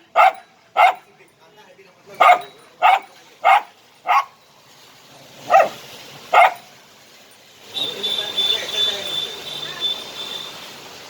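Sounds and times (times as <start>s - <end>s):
dog barking: 0.1s - 1.0s, 2.2s - 4.4s, 5.4s - 6.7s.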